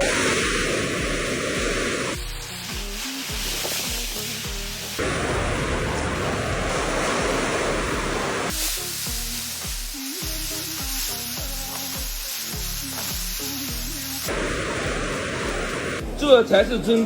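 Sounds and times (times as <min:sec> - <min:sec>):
heavy hail and rain: 0:00.0 - 0:16.0
music with bass beat: 0:01.6 - 0:05.0, 0:08.5 - 0:16.8.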